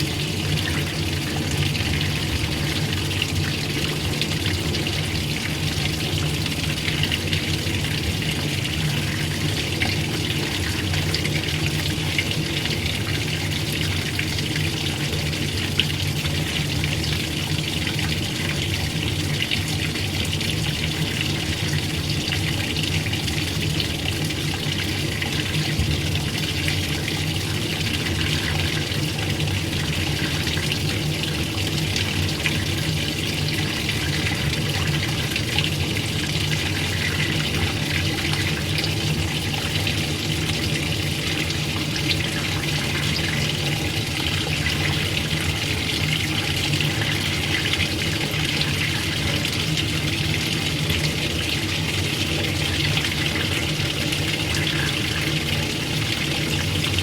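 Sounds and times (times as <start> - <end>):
water rushing in washing machine: 0.0 - 57.0.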